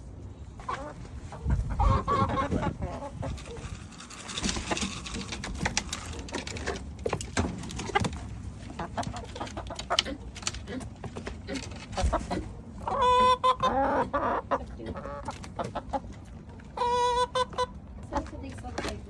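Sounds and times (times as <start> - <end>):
soft chicken clucks: 0.6 - 3.7, 8.7 - 18.4
chickens pecking sharp taps: 4.3 - 19.0.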